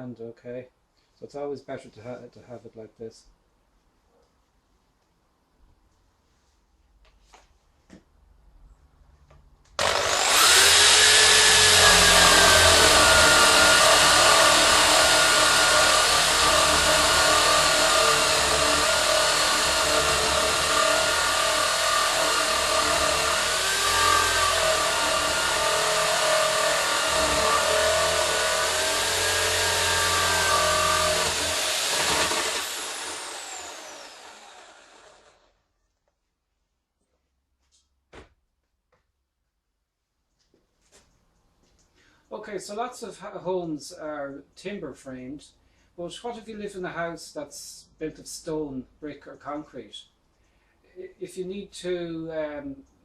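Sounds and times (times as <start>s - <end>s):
power drill boring into wood: 9.8s - 35.5s.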